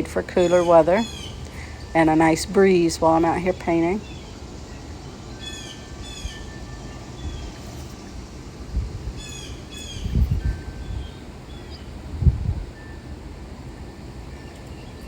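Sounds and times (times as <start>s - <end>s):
songbirds chirping: 0.0s - 15.0s
wind rumble on microphone: 6.0s - 13.4s.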